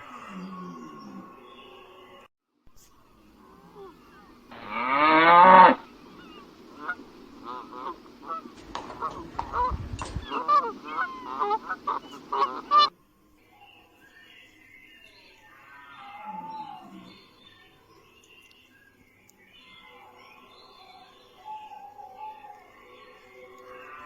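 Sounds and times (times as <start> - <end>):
cow mooing: 4.5 - 5.8
waterfowl honking: 4.5 - 12.9.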